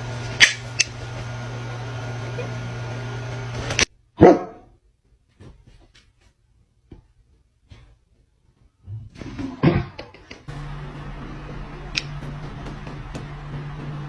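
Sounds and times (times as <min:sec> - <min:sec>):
dog barking: 0:04.2 - 0:04.7.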